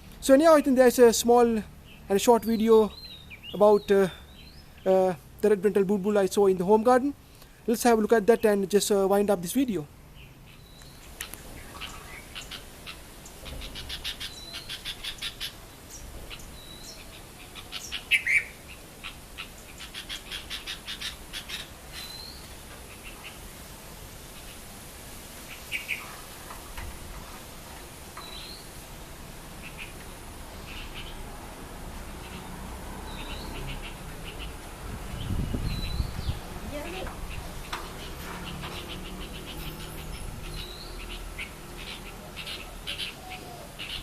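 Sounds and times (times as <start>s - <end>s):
birds chirping rapidly: 0.0s - 44.0s
loud bird call: 10.5s - 23.5s, 35.2s - 44.0s.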